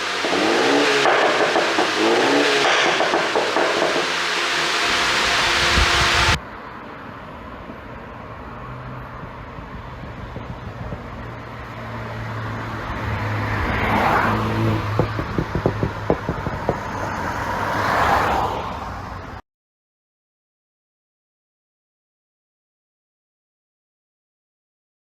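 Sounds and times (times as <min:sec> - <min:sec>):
car exhaust roaring: 0:00.0 - 0:06.4, 0:13.5 - 0:18.3
exhaust crackles and pops: 0:00.0 - 0:06.4, 0:14.8 - 0:17.4.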